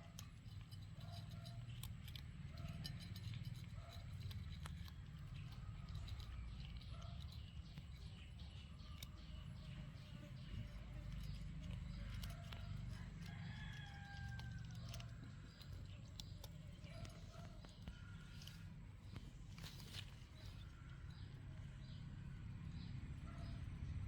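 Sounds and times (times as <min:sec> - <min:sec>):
cats eating: 0:00.0 - 0:23.8
rooster crowing: 0:12.9 - 0:15.0.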